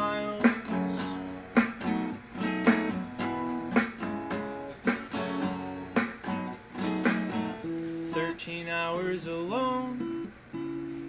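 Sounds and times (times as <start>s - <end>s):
person singing: 0.0s - 1.3s
strummed guitar chords: 0.0s - 11.0s.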